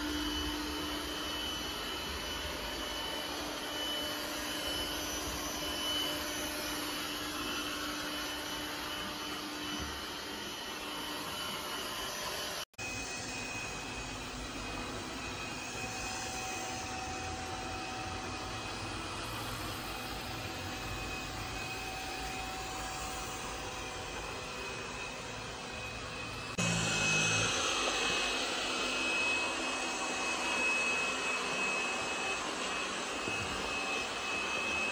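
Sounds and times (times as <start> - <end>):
robot vacuum whirring: 0.0 - 34.9.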